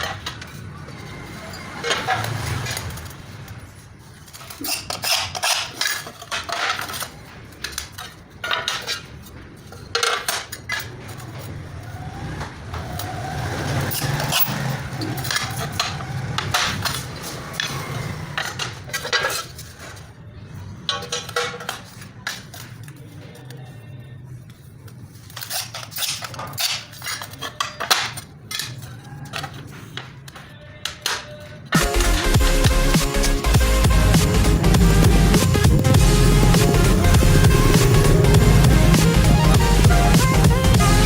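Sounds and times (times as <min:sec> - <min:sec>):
trowel scraping mortar: 0:12.7 - 0:20.1, 0:24.3 - 0:30.0.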